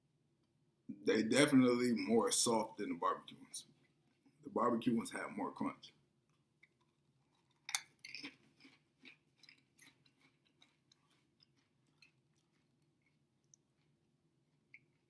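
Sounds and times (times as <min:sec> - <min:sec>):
person chewing crisps: 0:06.3 - 0:15.0.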